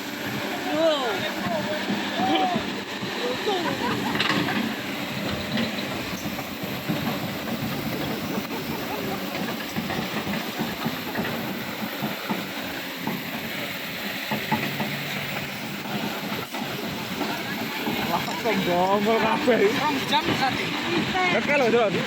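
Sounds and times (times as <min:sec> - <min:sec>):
excavator diesel engine: 0:00.0 - 0:22.0
clattering clanking rattle: 0:03.6 - 0:13.5.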